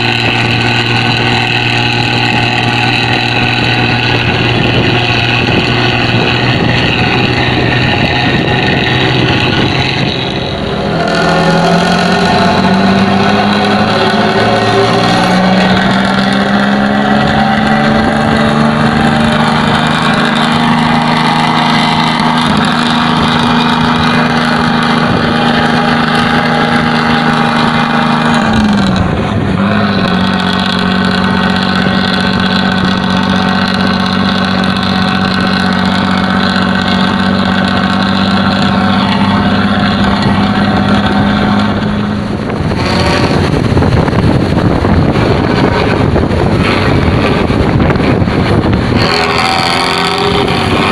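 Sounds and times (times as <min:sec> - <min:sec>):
bus diesel engine droning: 0:00.0 - 0:50.9
loud rushing noise: 0:00.0 - 0:50.9.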